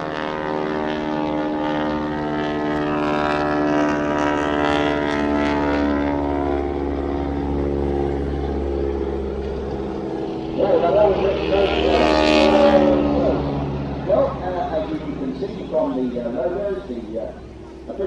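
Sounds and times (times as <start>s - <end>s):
biplane engines droning past: 0.0s - 18.0s.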